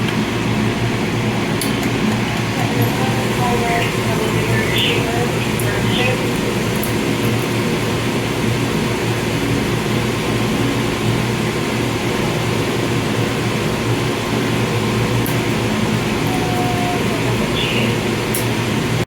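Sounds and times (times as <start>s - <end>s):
machinery humming: 0.0s - 19.0s.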